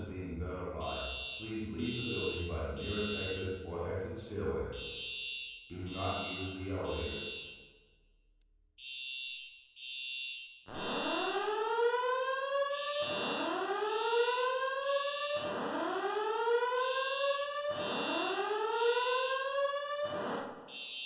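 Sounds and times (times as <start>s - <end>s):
high horn beeps: 0.8s - 3.6s, 4.7s - 7.8s.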